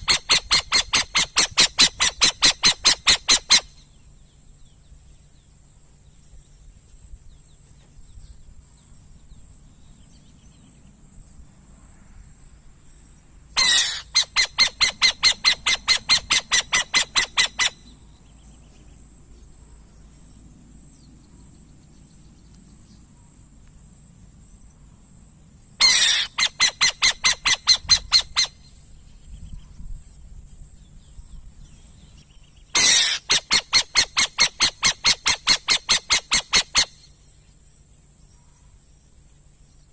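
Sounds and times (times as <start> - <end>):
owl calling harsh notes: 0.0 - 3.8, 13.6 - 17.9, 25.8 - 28.6, 32.8 - 37.1.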